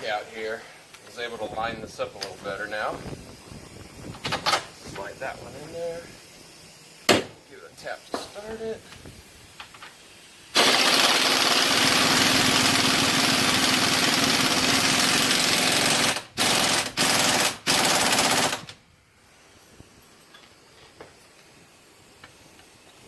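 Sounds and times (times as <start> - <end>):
impact wrench rattling: 10.6 - 18.7.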